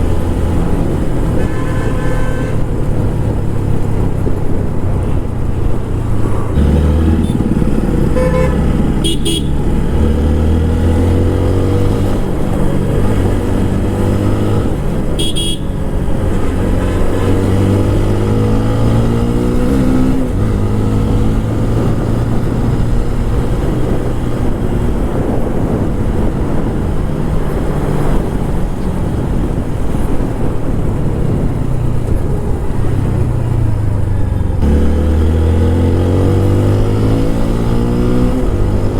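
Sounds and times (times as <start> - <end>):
motorcycle accelerating through gears: 0.0 - 1.9, 2.6 - 38.9
horn honking: 1.2 - 2.8, 6.6 - 9.9, 15.1 - 18.2.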